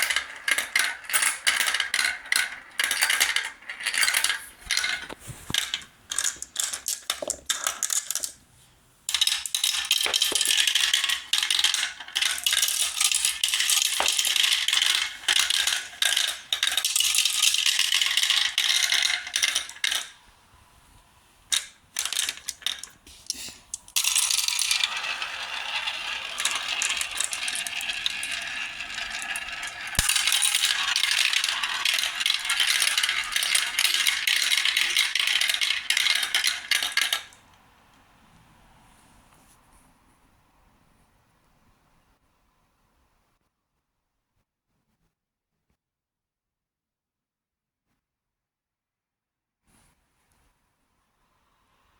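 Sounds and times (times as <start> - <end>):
marbles rolling down a track: 0.0 - 8.4, 9.1 - 20.2, 21.5 - 37.5.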